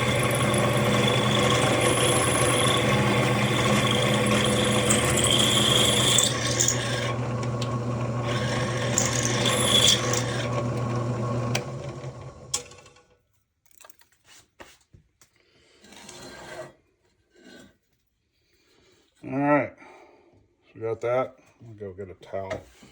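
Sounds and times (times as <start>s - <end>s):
drill bit scraping metal: 0.0s - 11.6s
drill press motor hum: 0.0s - 12.7s.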